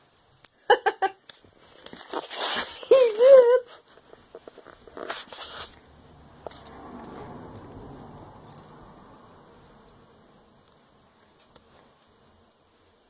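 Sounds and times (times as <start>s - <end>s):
light clinking and rustling: 0.0s - 0.6s, 1.3s - 8.8s.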